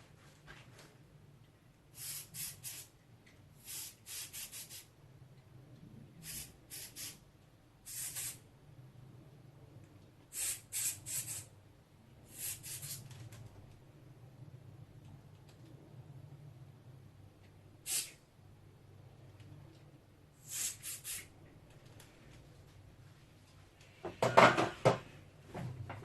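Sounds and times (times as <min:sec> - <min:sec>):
compressed air hissing bursts: 0:02.0 - 0:02.9, 0:03.6 - 0:04.9, 0:06.2 - 0:07.2, 0:07.9 - 0:08.4, 0:10.3 - 0:11.5, 0:12.3 - 0:13.1, 0:17.8 - 0:18.2, 0:20.4 - 0:21.3.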